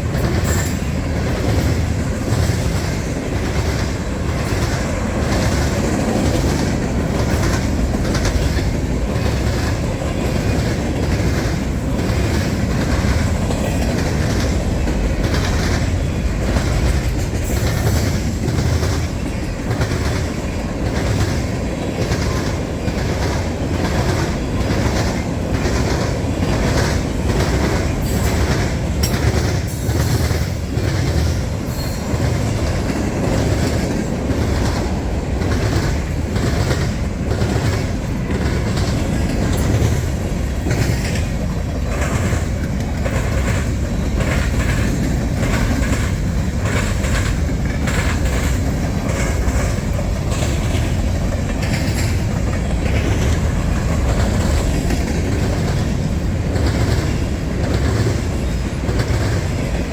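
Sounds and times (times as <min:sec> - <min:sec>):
freight train rumble: 0:00.0 - 0:59.9
wheels clacking over rail joints: 0:00.0 - 0:59.9.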